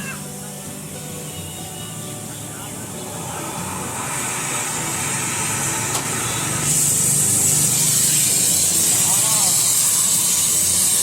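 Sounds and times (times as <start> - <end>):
tractor diesel engine running: 1.4 - 11.0
high hiss: 3.0 - 11.0.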